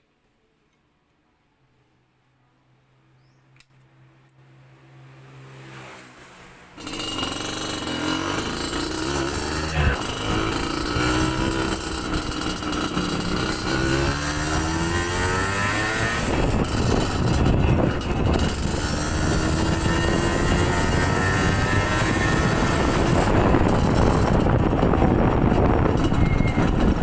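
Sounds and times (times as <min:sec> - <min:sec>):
two-stroke engine accelerating: 0:06.8 - 0:27.0.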